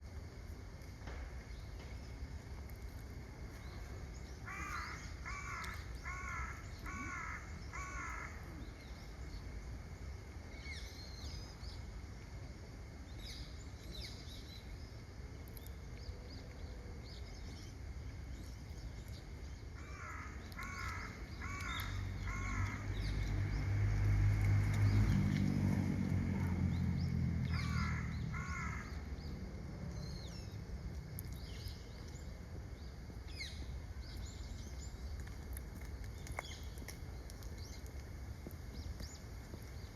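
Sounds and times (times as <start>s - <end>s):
crow cawing: 4.4s - 8.4s, 19.8s - 22.8s, 27.5s - 29.0s
small birds chirping: 13.1s - 39.9s
low rumble: 21.2s - 39.9s.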